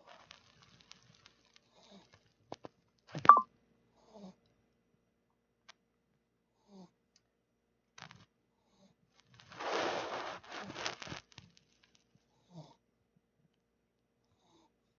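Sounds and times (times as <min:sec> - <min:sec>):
rustling and crackling: 0:00.0 - 0:02.8, 0:09.2 - 0:12.2
dog snoring softly: 0:04.0 - 0:04.4, 0:06.6 - 0:07.0, 0:12.3 - 0:12.8.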